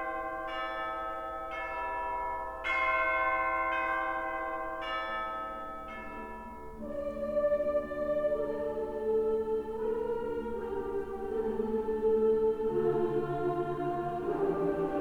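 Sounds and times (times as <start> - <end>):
bell-like chimes ringing: 0.0 - 6.8.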